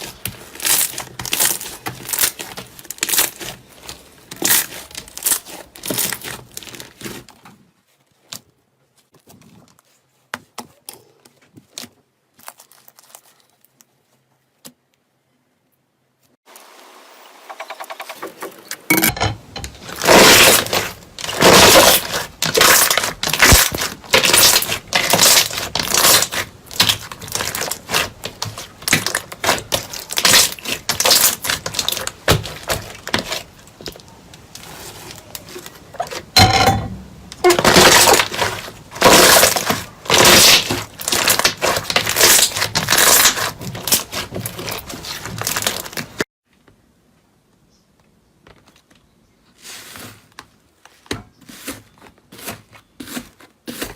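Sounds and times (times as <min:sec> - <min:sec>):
brittle material crunching: 0:00.0 - 0:10.0, 0:10.7 - 0:14.2, 0:19.1 - 0:46.2.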